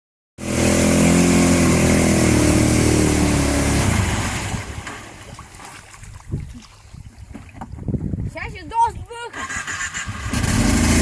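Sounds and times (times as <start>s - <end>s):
engine running at high revs: 0.4s - 4.8s, 9.4s - 11.0s.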